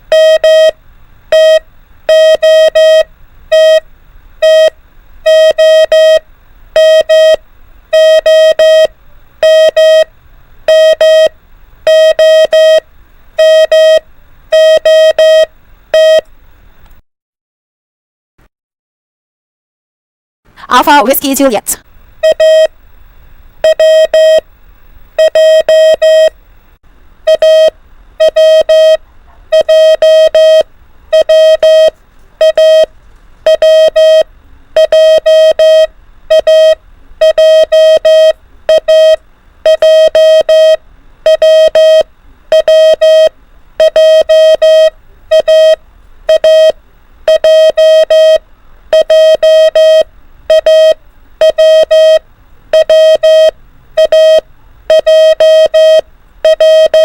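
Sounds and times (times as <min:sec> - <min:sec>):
morse code beeps: 0:00.1 - 0:03.8, 0:04.4 - 0:06.2, 0:06.8 - 0:10.1, 0:10.7 - 0:11.3, 0:11.9 - 0:12.8, 0:13.4 - 0:16.2, 0:22.2 - 0:22.7, 0:23.6 - 0:24.4, 0:25.2 - 0:26.4, 0:27.3 - 0:57.0.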